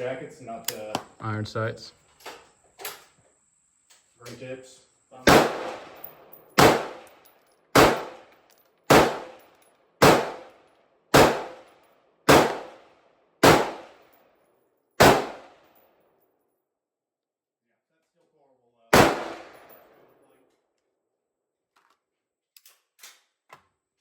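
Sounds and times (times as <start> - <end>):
rifle shots with echo: 5.2 - 8.3, 8.9 - 14.0, 15.0 - 15.6, 18.9 - 20.1.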